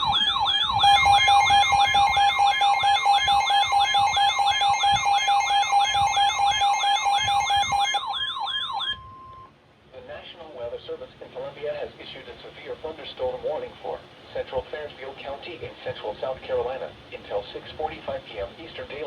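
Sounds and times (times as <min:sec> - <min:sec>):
steady electronic tone: 0:00.0 - 0:09.0
electronic siren tone sweeping: 0:00.0 - 0:09.3.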